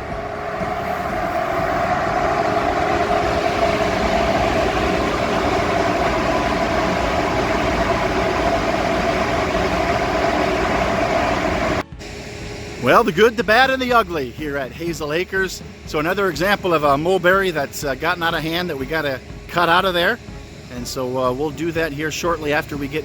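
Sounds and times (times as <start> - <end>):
dryer fan rushing air with hum: 0.0 - 23.0.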